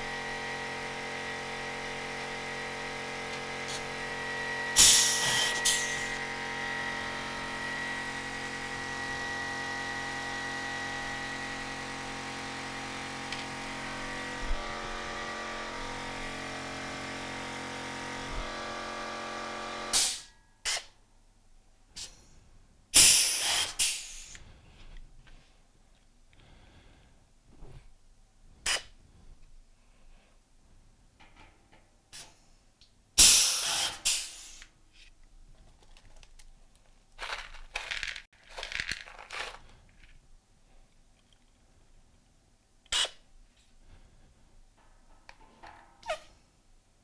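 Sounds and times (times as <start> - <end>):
machine hum: 0.0 - 19.9
air hiss bursts: 4.8 - 6.2, 23.0 - 24.4, 33.2 - 34.7.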